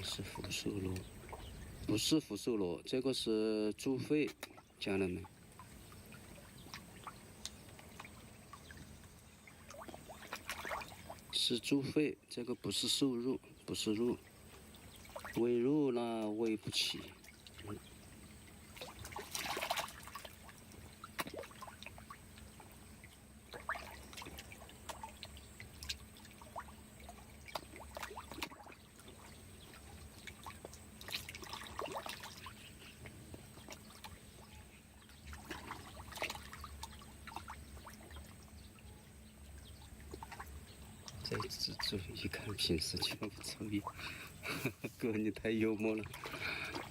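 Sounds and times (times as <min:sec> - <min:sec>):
water splashing and trickling: 0:00.0 - 0:02.5, 0:03.3 - 0:46.9
low steady hum: 0:00.0 - 0:46.9.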